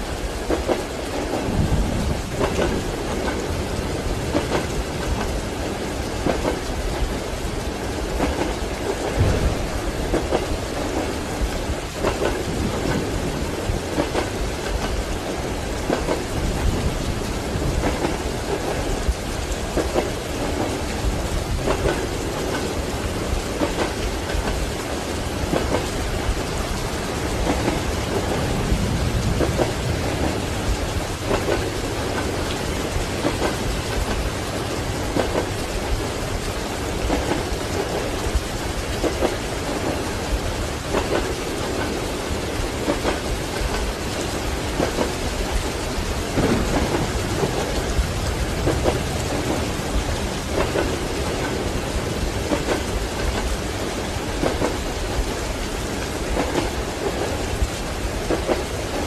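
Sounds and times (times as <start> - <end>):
rumbling thunder: 0.0 - 36.1, 44.6 - 55.3
steady rain: 0.0 - 59.0
train wheels clacking on rails: 0.0 - 59.0.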